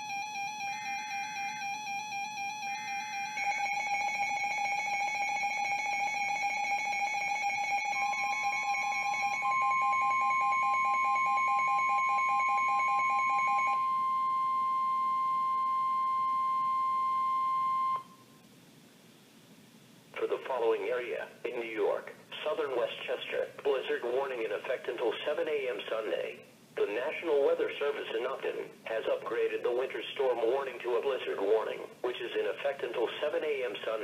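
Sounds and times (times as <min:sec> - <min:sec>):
pulsing alarm beeps: 0:00.0 - 0:18.2
single-pitch warning alarm tone: 0:00.0 - 0:18.4
steady electronic tones: 0:00.0 - 0:18.4.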